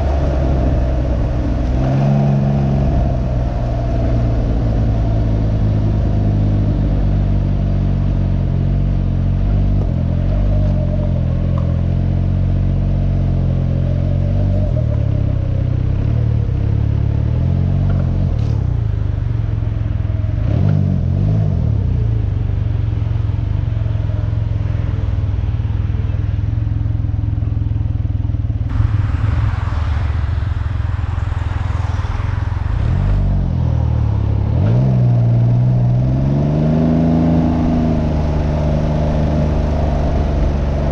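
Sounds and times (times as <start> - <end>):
rushing noise: 0.0 - 7.6, 28.7 - 40.9
motorcycle engine accelerating: 0.0 - 40.9.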